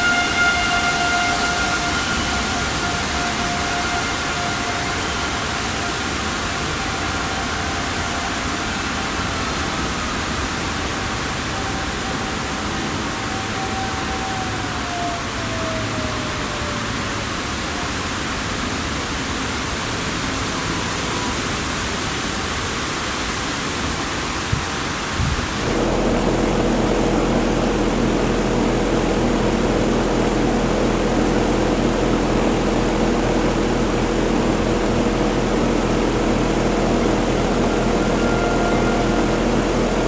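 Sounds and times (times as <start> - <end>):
distant siren winding down: 0.0 - 10.0, 11.4 - 17.6, 25.6 - 40.0
low drone of held tones: 25.6 - 40.0.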